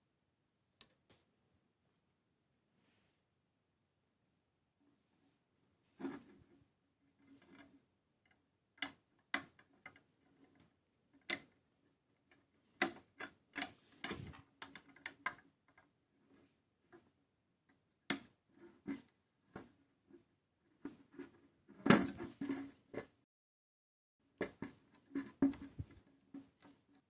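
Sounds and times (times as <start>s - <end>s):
small plastic clicks and taps: 8.3s - 11.5s, 12.8s - 15.9s.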